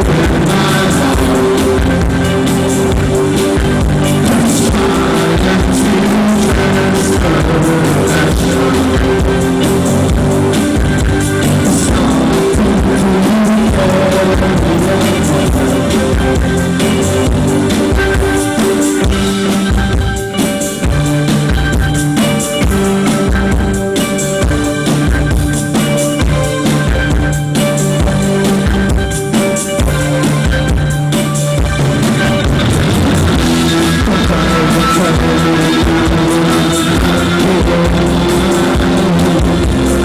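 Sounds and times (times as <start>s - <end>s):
person singing: 0.0s - 19.9s, 32.4s - 40.0s
rock band playing: 0.0s - 40.0s.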